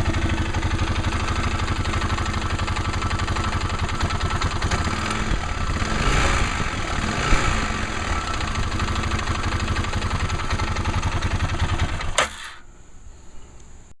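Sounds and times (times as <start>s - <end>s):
engine idling with rattle: 0.0s - 12.6s
faint steady hum: 12.4s - 14.0s.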